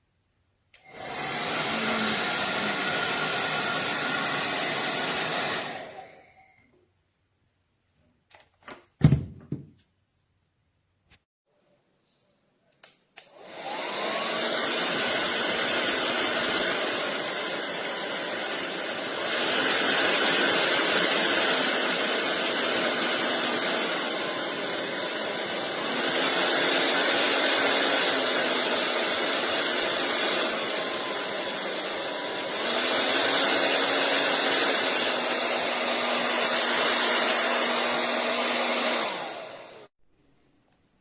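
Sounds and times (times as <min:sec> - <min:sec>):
hair dryer switch clicks: 0:00.7 - 0:00.9, 0:12.8 - 0:13.4
hair dryer blowing: 0:00.8 - 0:06.6, 0:13.2 - 0:40.0.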